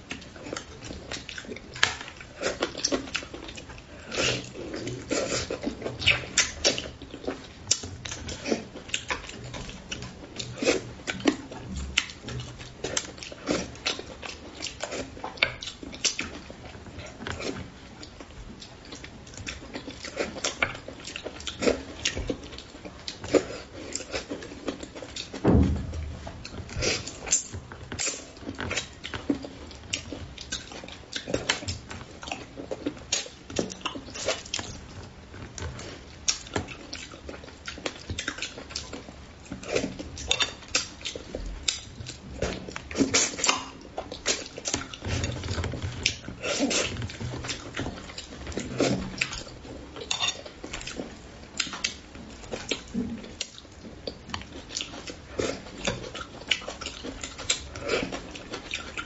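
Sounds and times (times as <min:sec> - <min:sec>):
wet chewing and lip smacking: 0:00.0 - 0:59.0
utensils clinking against dish: 0:50.0 - 0:50.5.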